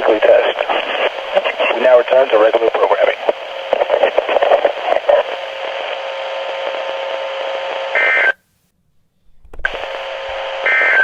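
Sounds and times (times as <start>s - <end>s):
radio static hiss: 0.0s - 8.4s, 9.6s - 11.0s
faint hum tone: 3.3s - 11.0s.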